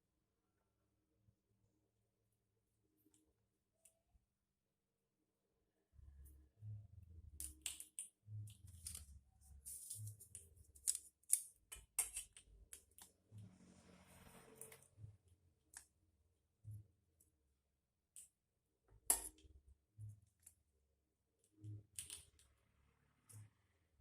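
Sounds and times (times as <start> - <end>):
brief rushing noise: 13.4 - 15.2.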